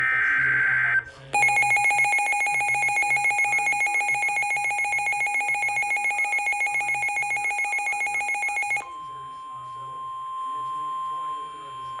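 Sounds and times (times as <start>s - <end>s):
pulsing electronic alarm tone: 1.4s - 8.8s.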